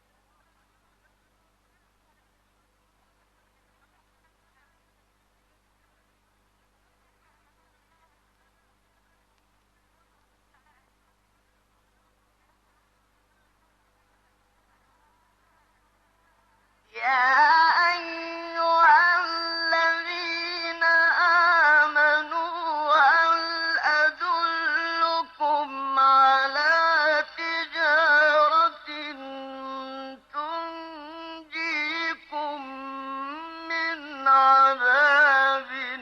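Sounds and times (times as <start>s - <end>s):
man reciting melodically: 16.9s - 36.0s.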